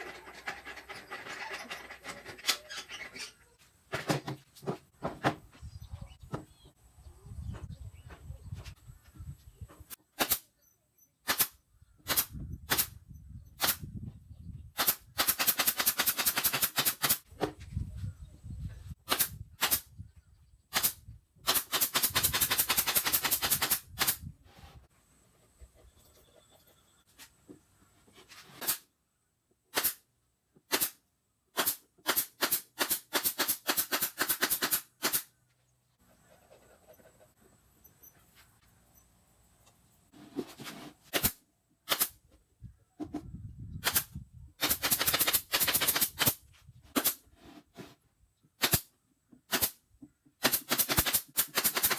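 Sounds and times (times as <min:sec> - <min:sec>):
sharp loud clicks: 0:10.2 - 0:10.5, 0:11.2 - 0:13.0, 0:14.8 - 0:17.2, 0:19.0 - 0:19.9, 0:20.7 - 0:24.2, 0:30.7 - 0:35.3, 0:41.1 - 0:42.2, 0:43.8 - 0:46.4, 0:48.6 - 0:48.9, 0:49.5 - 0:49.8, 0:50.4 - 0:51.9.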